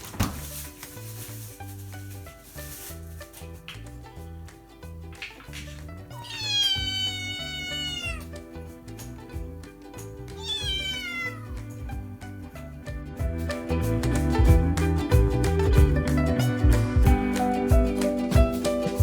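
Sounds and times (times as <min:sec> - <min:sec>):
background music: 0:00.0 - 0:19.0
kitten meowing: 0:06.2 - 0:08.3, 0:10.3 - 0:11.7.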